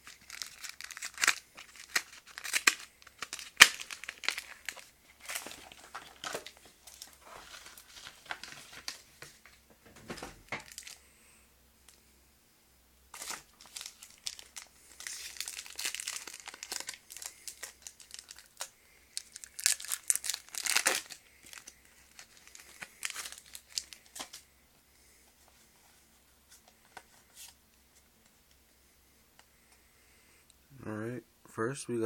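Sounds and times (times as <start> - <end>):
foil wrapper crinkling and tearing: 0.0 - 9.6, 10.5 - 11.0, 13.1 - 24.4.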